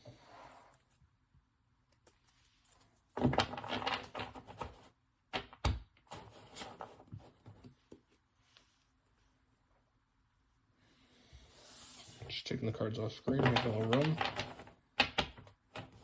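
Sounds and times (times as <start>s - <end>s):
cards clicking and rustling: 13.3s - 16.0s.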